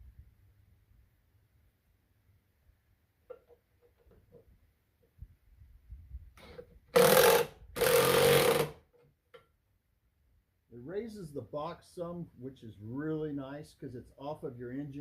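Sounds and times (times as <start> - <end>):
socket ratchet clicking: 7.0 - 8.7.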